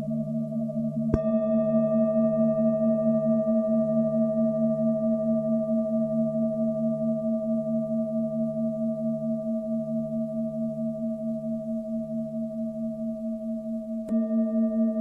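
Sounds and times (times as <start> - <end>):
singing bowl ringing: 1.0 - 8.7, 14.1 - 15.0.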